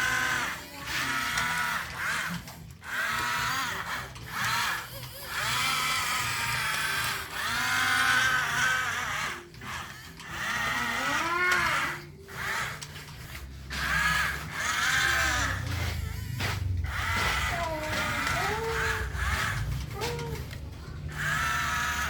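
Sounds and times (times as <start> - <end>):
small electric motors whining: 0.0 - 22.0.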